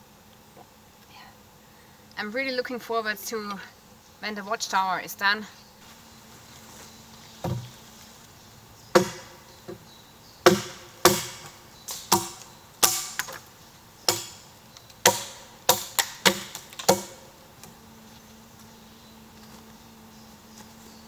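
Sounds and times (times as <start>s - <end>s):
hand tool striking wood: 7.4s - 7.7s, 8.9s - 9.8s, 10.4s - 13.4s, 14.1s - 17.3s.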